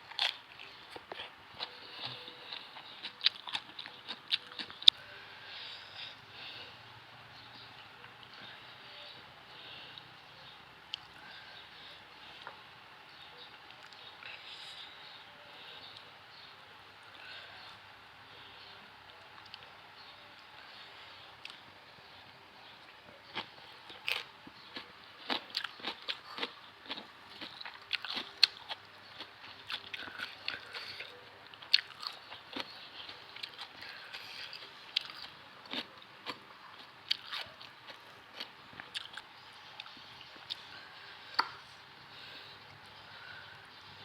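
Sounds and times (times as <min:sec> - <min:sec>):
person chewing crunchy food: 0:00.0 - 0:05.1, 0:23.2 - 0:41.7.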